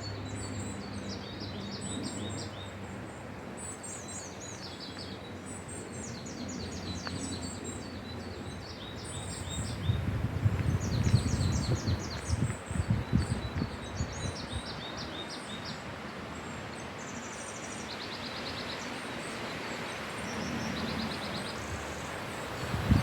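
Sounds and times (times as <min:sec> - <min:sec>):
wind through trees: 0:00.0 - 0:23.0
small birds chirping: 0:03.6 - 0:15.8
wind buffeting microphone: 0:08.8 - 0:14.9, 0:21.6 - 0:23.0.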